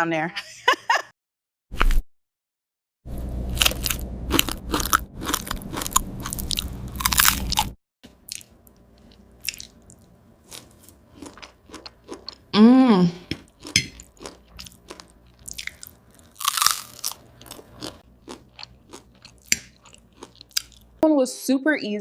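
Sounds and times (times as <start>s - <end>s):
crunchy bites and chewing: 3.5s - 12.4s, 13.4s - 21.0s.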